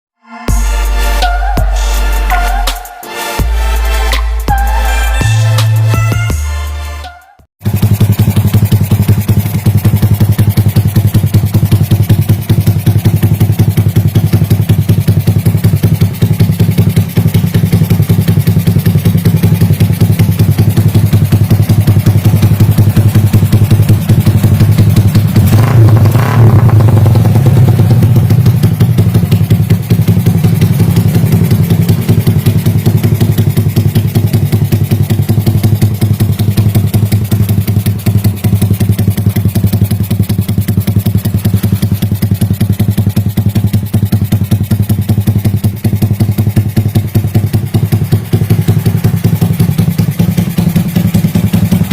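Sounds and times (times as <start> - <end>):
motorcycle engine idling and revving: 0.5 - 51.9.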